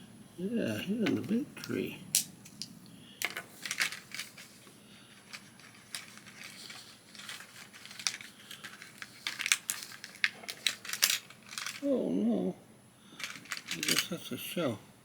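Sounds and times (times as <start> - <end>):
plastic toy pieces clicking: 3.2 - 4.5, 5.3 - 11.8, 13.2 - 14.1.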